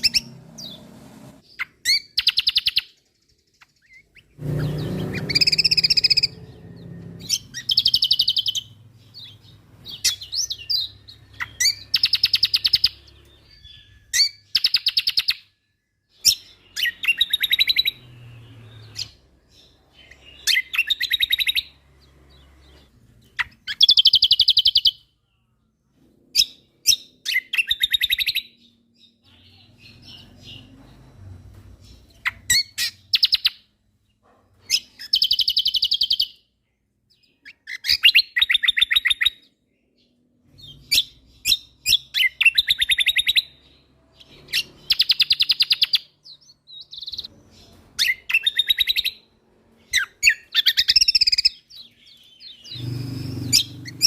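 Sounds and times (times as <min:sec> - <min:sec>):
songbird trilling: 0:00.0 - 0:00.8, 0:03.6 - 0:15.5, 0:49.9 - 0:54.0.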